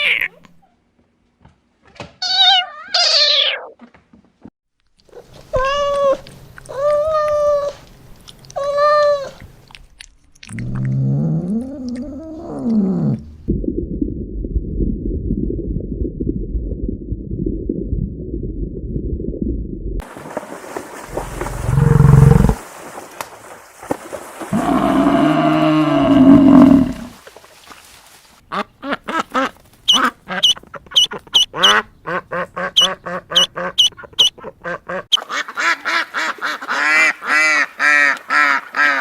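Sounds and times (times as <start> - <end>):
wavering meow-like calls: 2.2 - 3.7
low rising and falling call: 21.2 - 22.6.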